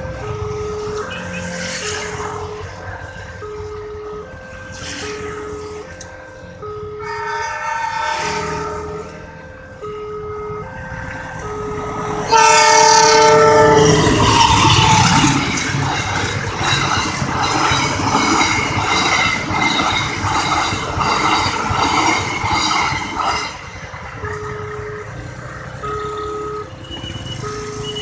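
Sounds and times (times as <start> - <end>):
level crossing warning siren: 0.0 - 28.0
train horn blasting: 6.7 - 9.4, 11.5 - 15.6
train wheels clacking on rails: 13.9 - 25.2.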